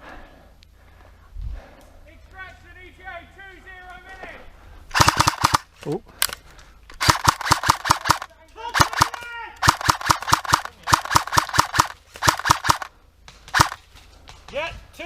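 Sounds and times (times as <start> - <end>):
airsoft gun firing bursts: 4.9 - 5.8, 7.0 - 12.9, 13.5 - 13.8.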